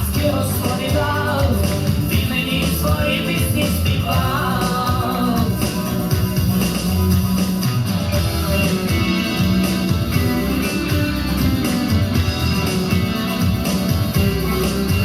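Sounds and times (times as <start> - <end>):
dance music: 0.0 - 15.0.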